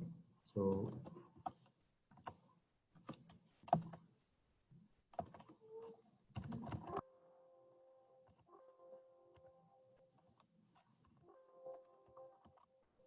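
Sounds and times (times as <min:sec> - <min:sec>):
faint steady held tones: 0:06.8 - 0:13.0.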